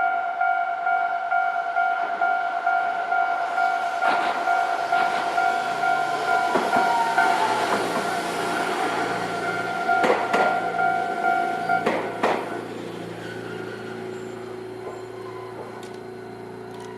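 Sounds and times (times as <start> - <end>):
tram wheels clacking over rail joints: 4.0 - 16.9
level crossing bell ringing: 9.4 - 11.8.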